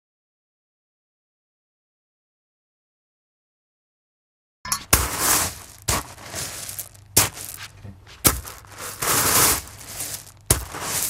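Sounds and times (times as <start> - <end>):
rustling and scraping: 4.7 - 11.0.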